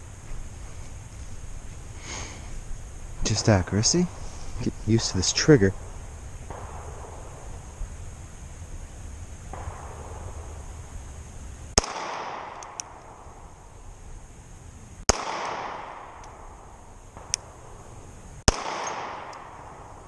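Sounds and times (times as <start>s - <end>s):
pistol shots with echo: 11.8s - 13.2s, 15.1s - 16.4s, 18.5s - 19.8s.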